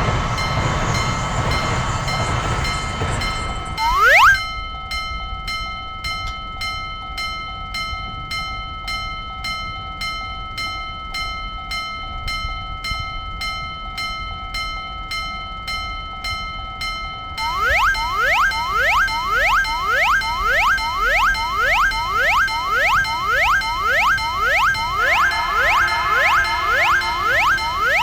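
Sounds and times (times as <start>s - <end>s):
railroad crossing bell ringing: 17.4s - 28.0s.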